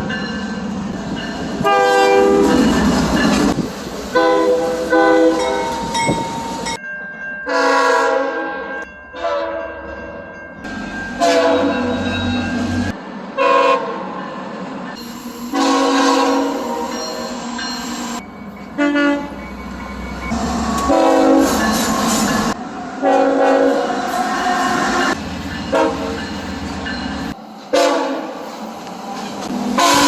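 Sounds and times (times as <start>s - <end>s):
train air horn blasts: 1.6s - 2.7s, 4.2s - 5.9s, 7.5s - 9.6s, 11.2s - 12.2s, 13.4s - 14.0s, 15.4s - 17.5s, 18.8s - 19.4s, 20.7s - 22.2s, 23.0s - 26.2s, 27.7s - 28.4s, 29.7s - 30.0s.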